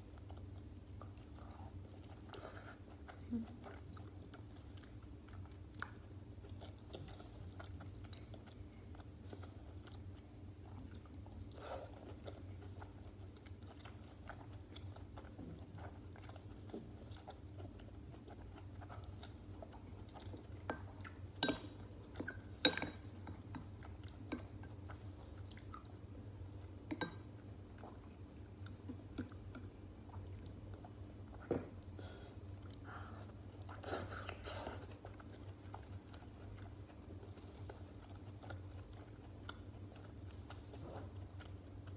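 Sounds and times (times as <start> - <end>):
chewing and biting food: 0.0 - 41.9.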